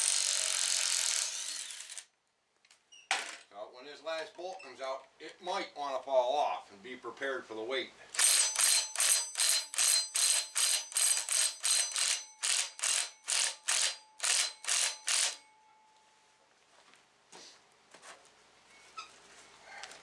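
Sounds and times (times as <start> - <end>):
ratchet wrench clicking: 8.2 - 15.4.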